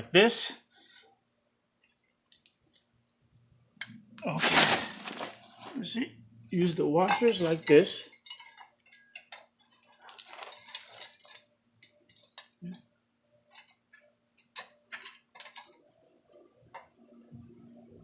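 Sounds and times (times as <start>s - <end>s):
faint steady hum: 0.0s - 18.0s
metal clicks and scrapes: 7.0s - 12.6s, 13.4s - 15.9s.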